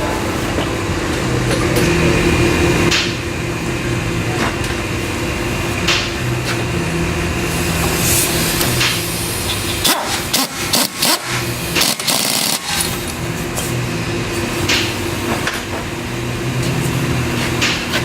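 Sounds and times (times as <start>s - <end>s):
steady machine hum: 0.0s - 18.0s
pneumatic impact wrench bursts: 8.0s - 13.1s.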